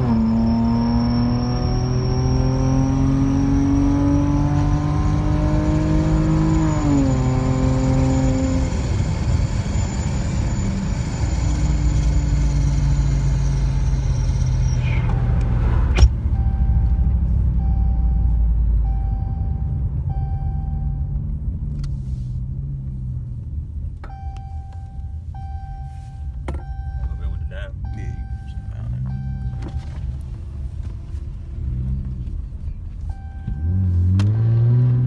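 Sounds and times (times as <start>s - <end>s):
car exhaust rumbling: 0.0s - 35.0s
chime beeping: 25.4s - 29.8s.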